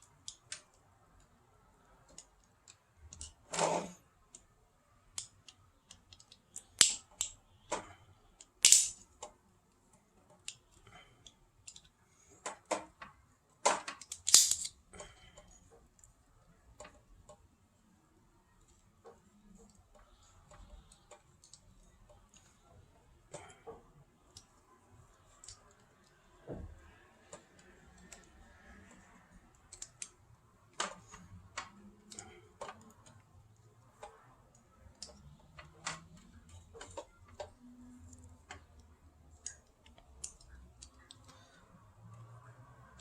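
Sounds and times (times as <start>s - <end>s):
clicks of small parts handled: 0.1s - 0.8s, 5.1s - 9.4s, 10.2s - 16.1s, 27.3s - 41.4s.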